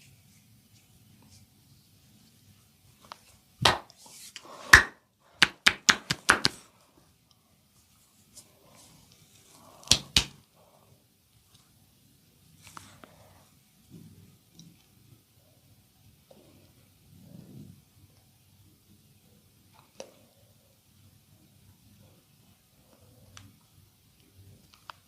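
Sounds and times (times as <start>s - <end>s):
hands slapping a body: 3.6s - 4.0s, 4.7s - 6.6s, 9.8s - 10.4s.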